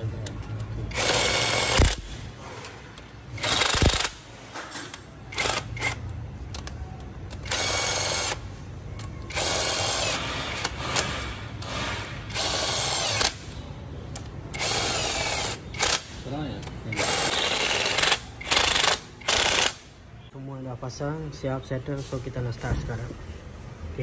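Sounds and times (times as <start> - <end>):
handheld power tool bursts: 0.9 - 2.2, 3.4 - 4.3, 9.3 - 13.6, 14.5 - 16.2, 16.9 - 19.8.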